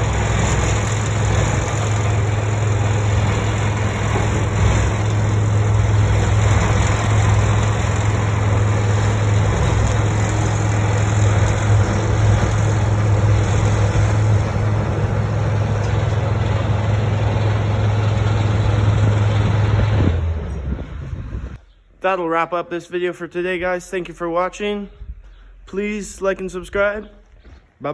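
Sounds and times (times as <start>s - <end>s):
tractor engine running: 0.0s - 21.7s.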